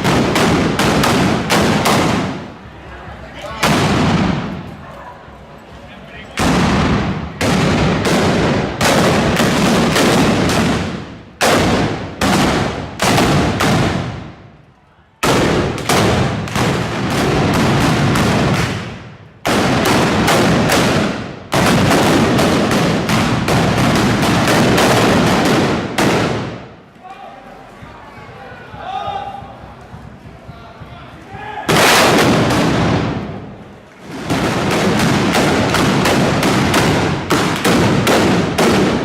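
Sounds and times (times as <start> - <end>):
gunshots with long echo: 0.0 - 2.7, 3.6 - 4.7, 6.4 - 14.6, 15.2 - 26.8, 31.7 - 39.0.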